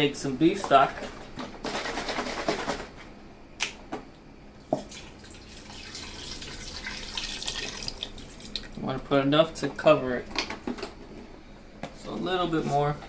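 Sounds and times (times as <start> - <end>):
liquid pouring and splashing: 4.8 - 8.8.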